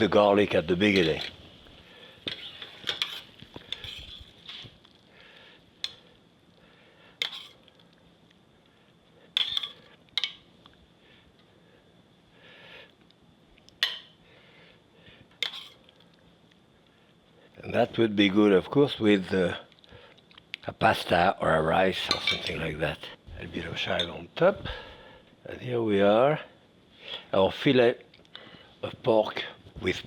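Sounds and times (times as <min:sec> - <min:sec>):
metal utensils clinking on cookware: 0:00.8 - 0:01.4, 0:02.3 - 0:04.7, 0:07.2 - 0:07.6, 0:09.4 - 0:10.4, 0:13.8 - 0:14.1, 0:15.4 - 0:15.8, 0:22.0 - 0:22.6.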